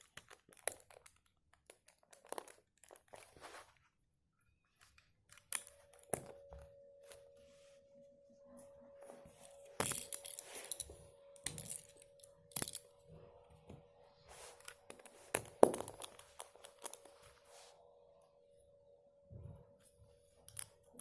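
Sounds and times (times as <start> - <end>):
faint steady hum: 4.4 - 21.0.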